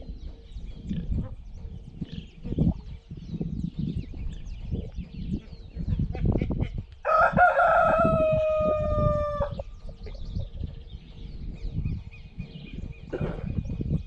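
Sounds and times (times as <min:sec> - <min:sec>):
rooster crowing: 0:07.1 - 0:09.6.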